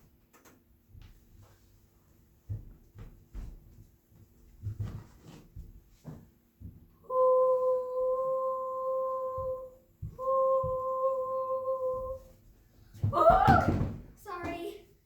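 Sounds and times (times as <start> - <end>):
child humming: 7.1 - 12.3.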